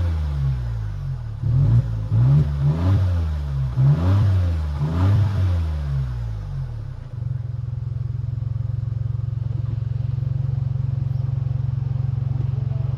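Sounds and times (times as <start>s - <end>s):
car engine idling: 0.0s - 12.9s.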